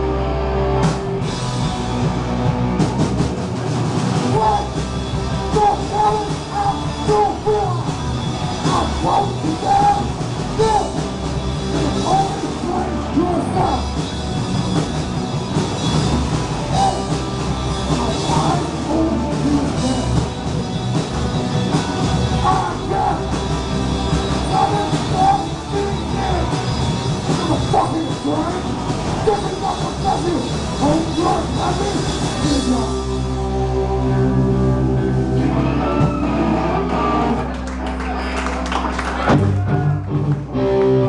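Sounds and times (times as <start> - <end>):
punk rock band playing live: 0.0 - 41.0
person singing: 4.3 - 4.8, 5.5 - 7.9, 8.6 - 11.0, 22.4 - 23.4.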